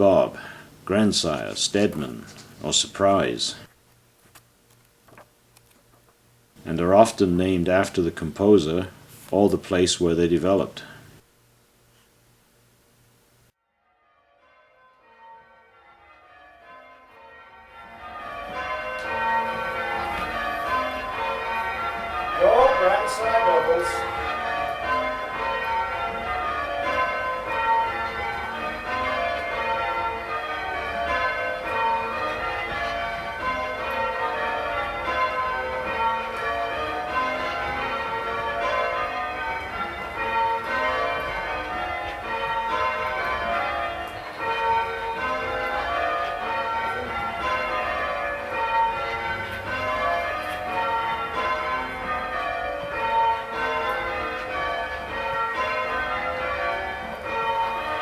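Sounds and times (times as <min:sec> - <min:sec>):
church bells change ringing: 0:14.4 - 0:58.0.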